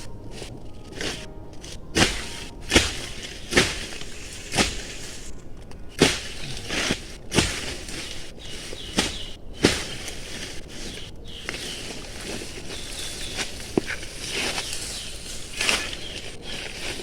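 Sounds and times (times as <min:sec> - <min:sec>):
sharp strikes: 0:00.0 - 0:10.2.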